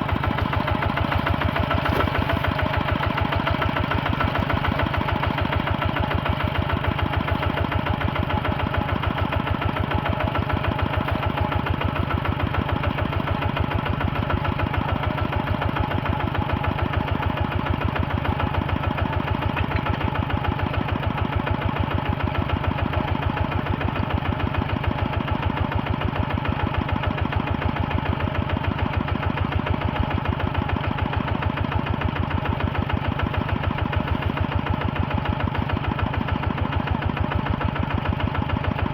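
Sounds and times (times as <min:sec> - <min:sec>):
heavy machine engine running: 0:00.0 - 0:25.6.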